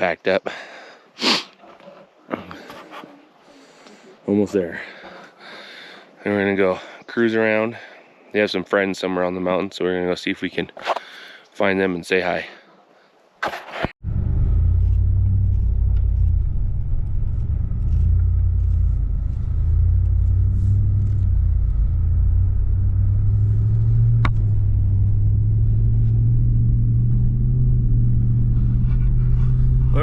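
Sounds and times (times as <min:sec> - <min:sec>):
truck engine and road rumble: 0:14.0 - 0:30.0.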